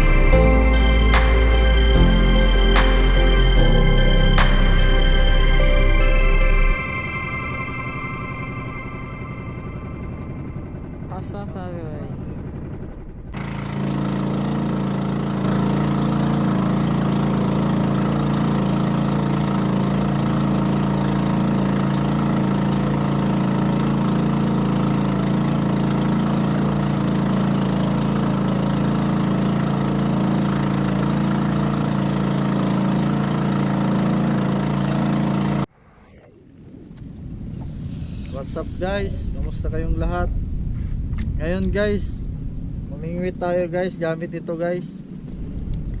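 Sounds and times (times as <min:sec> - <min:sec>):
small boat engine running: 0:00.0 - 0:46.0.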